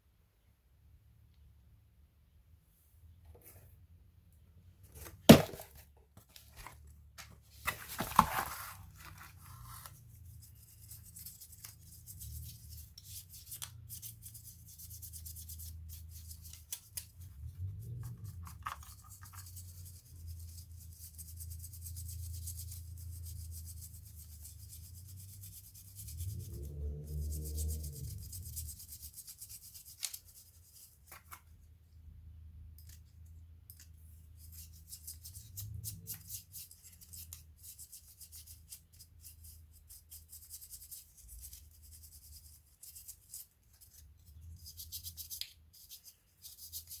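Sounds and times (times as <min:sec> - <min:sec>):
rubbing and scraping: 0:04.8 - 0:31.5.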